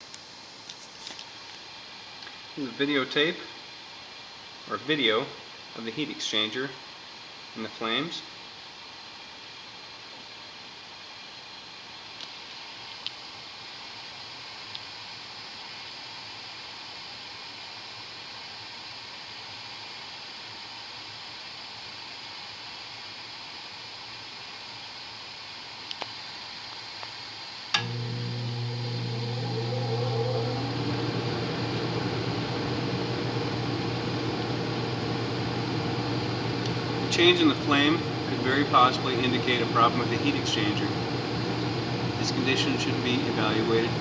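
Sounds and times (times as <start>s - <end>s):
gas furnace burners hissing: 0.0s - 44.0s
switch click: 27.8s - 28.0s
blower motor humming: 27.8s - 44.0s.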